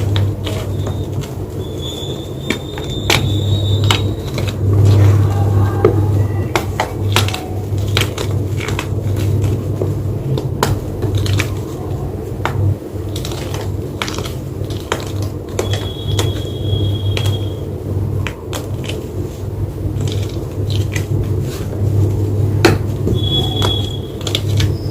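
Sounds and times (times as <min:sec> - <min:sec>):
chalk crunching and crumbling: 0:00.0 - 0:24.9
steady low hum: 0:00.0 - 0:24.9.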